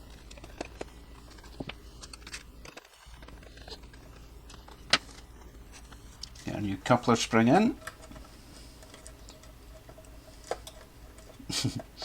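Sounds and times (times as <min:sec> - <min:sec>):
small clicks and scrapes: 0:00.0 - 0:06.5, 0:07.6 - 0:12.0.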